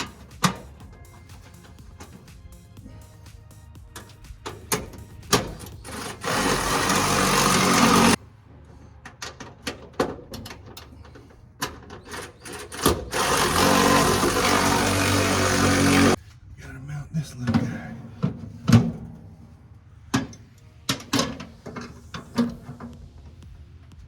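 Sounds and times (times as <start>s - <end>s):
electric drill drilling: 5.3s - 8.2s, 12.4s - 16.2s.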